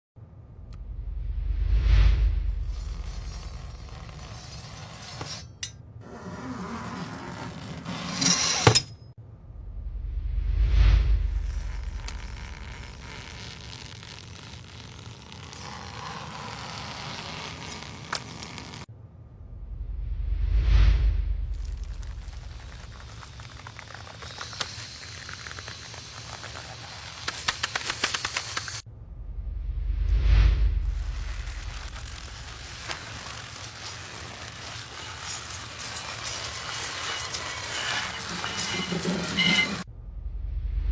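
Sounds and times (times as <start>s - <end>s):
whoosh: 0.7s - 3.6s, 9.4s - 11.8s, 19.4s - 22.3s, 28.8s - 32.6s
rising whoosh: 0.8s - 2.7s
crackling hiss with pops: 11.3s - 18.9s, 21.5s - 28.9s, 30.8s - 39.9s.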